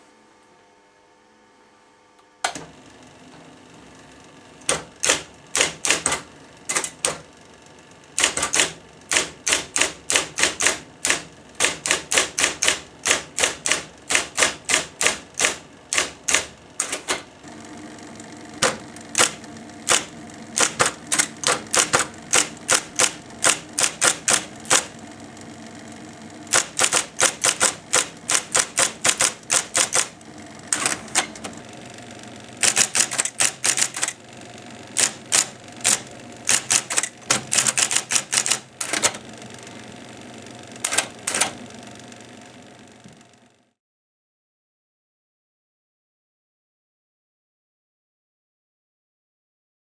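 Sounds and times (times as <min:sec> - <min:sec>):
typewriter motor humming: 0:02.4 - 0:43.7
typewriter clacks: 0:04.7 - 0:07.2, 0:08.2 - 0:17.3, 0:18.6 - 0:25.0, 0:26.5 - 0:31.5, 0:32.6 - 0:34.2, 0:35.0 - 0:39.2, 0:40.8 - 0:41.6.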